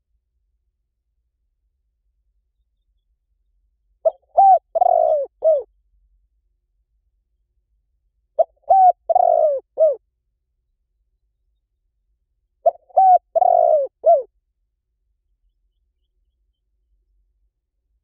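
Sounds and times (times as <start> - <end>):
dove cooing: 4.0 - 5.7, 8.4 - 10.0, 12.6 - 14.3.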